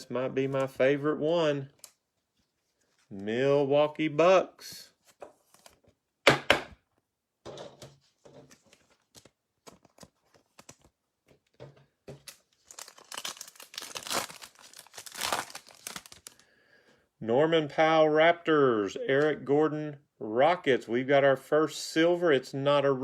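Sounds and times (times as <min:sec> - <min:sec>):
trading cards handled: 0:05.0 - 0:06.0, 0:07.8 - 0:16.4
plastic wrapper tearing and crinkling: 0:12.2 - 0:16.4.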